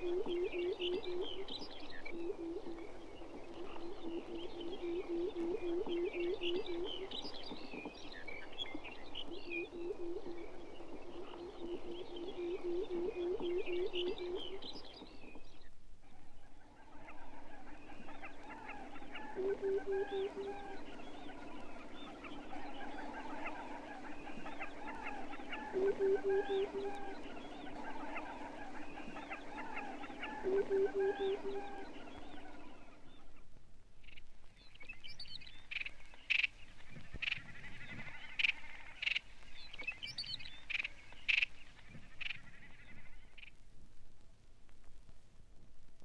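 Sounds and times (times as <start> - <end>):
bird hooting: 0.0 - 15.5, 16.1 - 33.4
high chirping calls: 0.0 - 15.5, 16.8 - 33.1
low drone: 16.8 - 33.2.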